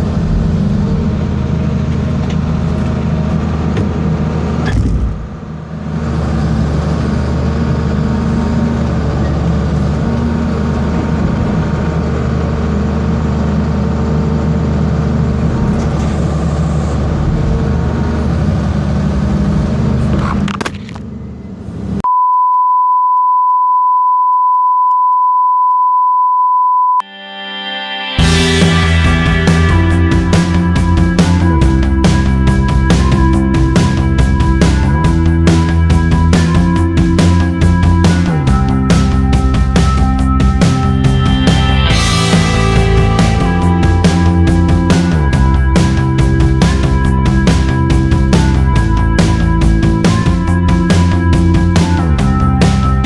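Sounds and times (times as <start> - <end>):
excavator diesel engine running: 0.0 - 21.9, 28.2 - 53.0
steady high beep: 22.0 - 28.3.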